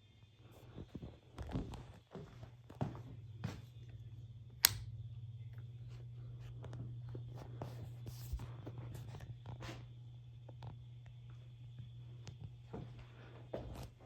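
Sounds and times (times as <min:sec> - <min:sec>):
ceiling fan motor hum: 0:00.0 - 0:14.0
sharp click: 0:04.6 - 0:04.9.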